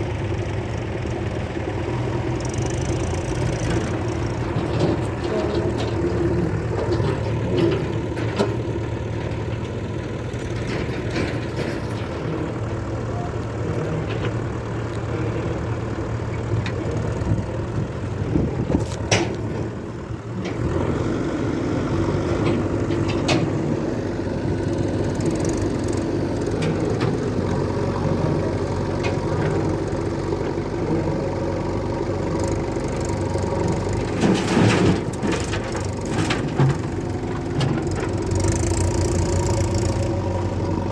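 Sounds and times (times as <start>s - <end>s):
diesel engines running: 0.0s - 40.9s.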